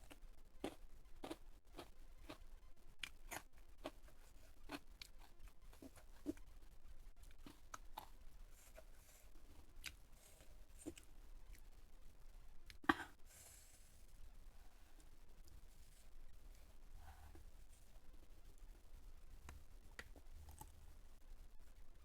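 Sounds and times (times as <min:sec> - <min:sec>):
crunchy food chewing: 0:00.0 - 0:06.5, 0:07.2 - 0:11.8, 0:20.0 - 0:20.8.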